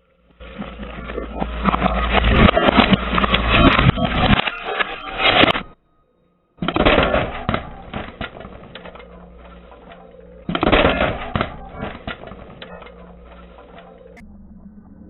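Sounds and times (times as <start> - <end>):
brittle objects crunching: 6.6 - 14.2.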